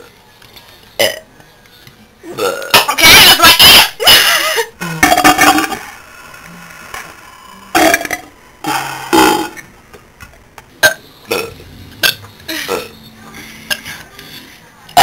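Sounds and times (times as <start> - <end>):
girl burping: 2.2 - 3.3, 4.1 - 5.8, 10.8 - 13.0.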